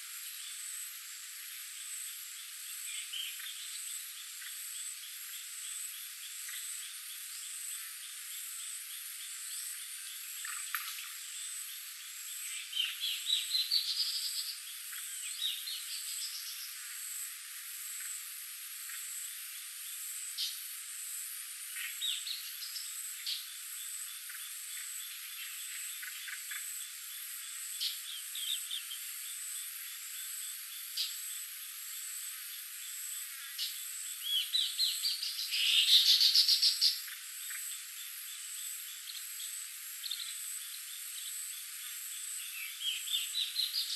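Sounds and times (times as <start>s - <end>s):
high-pitched insect drone: 0.0s - 43.9s
frogs clicking calls: 8.0s - 11.9s, 17.9s - 19.2s, 21.7s - 29.1s, 32.9s - 39.4s.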